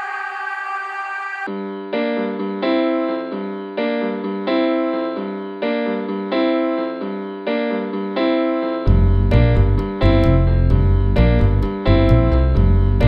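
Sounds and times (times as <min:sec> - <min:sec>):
keyboard chords: 0:01.5 - 0:13.0
deep bass and percussion: 0:08.9 - 0:13.0.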